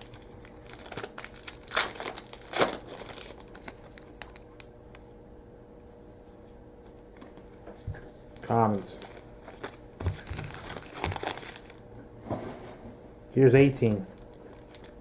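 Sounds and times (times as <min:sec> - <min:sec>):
foil wrapper ripping: 0:00.0 - 0:04.6, 0:08.7 - 0:11.8, 0:14.1 - 0:15.0
foil wrapper crinkling: 0:00.0 - 0:04.7, 0:08.6 - 0:11.8, 0:14.1 - 0:15.0.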